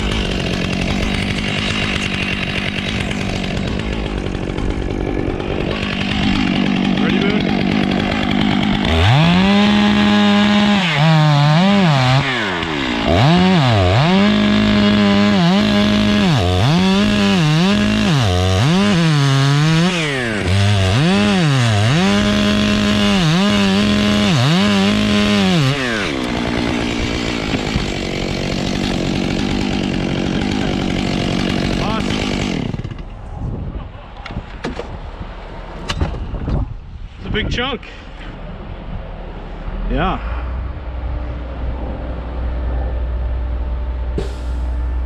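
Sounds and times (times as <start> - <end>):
chainsaw cutting wood: 0.0 - 33.2, 44.2 - 44.7.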